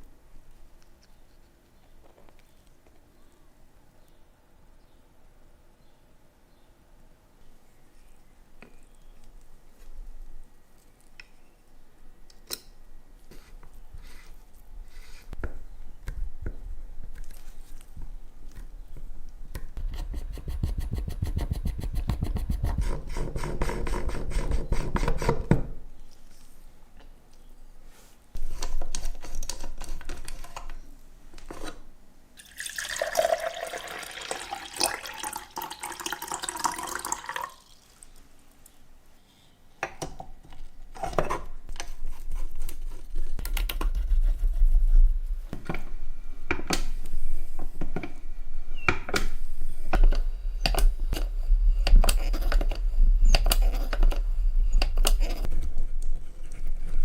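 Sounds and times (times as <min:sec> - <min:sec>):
container filling with water: 0:32.4 - 0:37.9
water running: 0:32.4 - 0:38.2.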